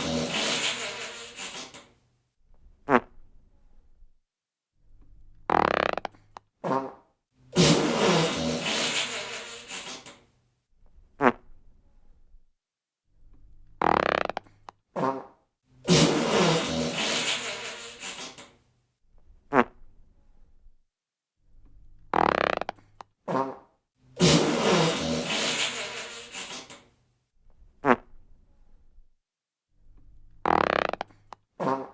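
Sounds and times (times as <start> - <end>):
farts: 0.0 - 1.9, 2.8 - 3.2, 5.5 - 10.2, 11.2 - 11.6, 13.8 - 18.5, 19.5 - 19.9, 22.1 - 26.9, 27.8 - 28.2, 30.4 - 31.9.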